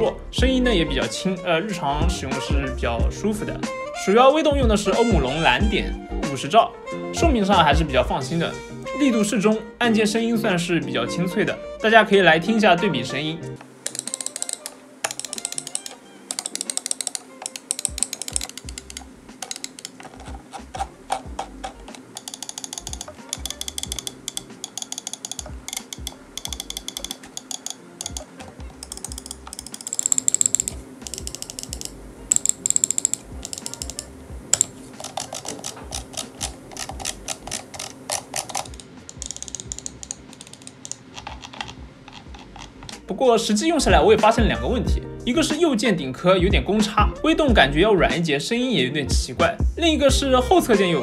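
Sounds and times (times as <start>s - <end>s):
computer mouse buttons clicking: 13.8s - 43.0s.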